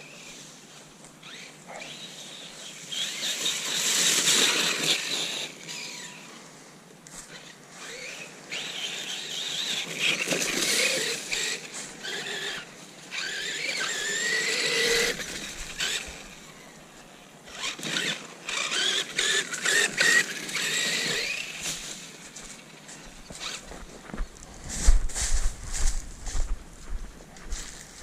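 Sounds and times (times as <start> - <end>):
rc car electric motor whining: 1.2 - 6.4, 7.3 - 23.6.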